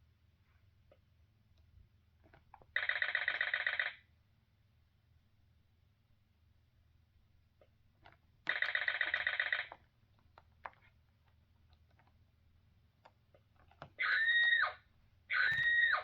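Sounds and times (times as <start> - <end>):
toy rattling sound effect: 8.5 - 9.7.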